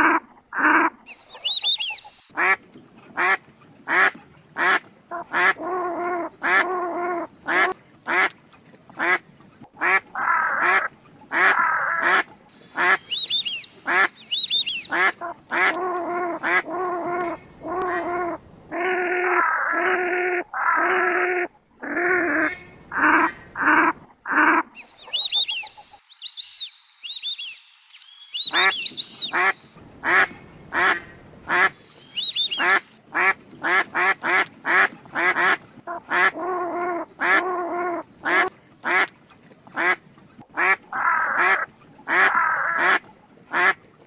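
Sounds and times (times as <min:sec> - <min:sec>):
high thin gliding calls: 0:01.1 - 0:02.3, 0:12.5 - 0:15.7, 0:24.8 - 0:30.2, 0:31.5 - 0:33.0
ducks quacking: 0:09.8 - 0:26.7, 0:28.3 - 0:39.1.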